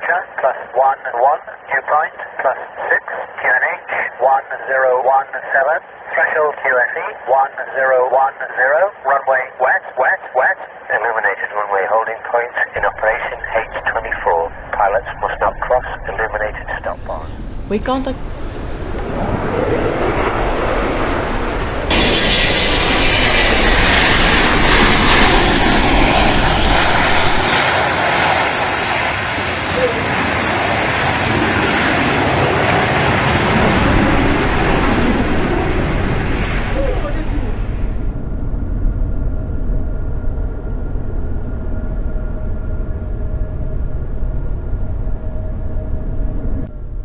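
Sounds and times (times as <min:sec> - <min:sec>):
airplane engine roar: 0:12.8 - 0:47.0.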